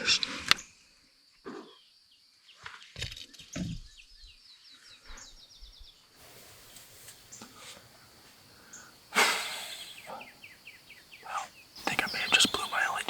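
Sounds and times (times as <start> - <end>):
songbird trilling: 8.6 - 13.0.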